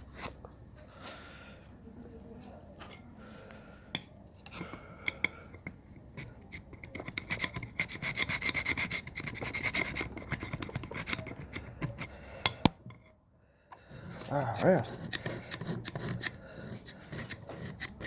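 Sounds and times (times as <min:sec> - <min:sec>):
metal tool scraping carbon: 0:03.9 - 0:18.0.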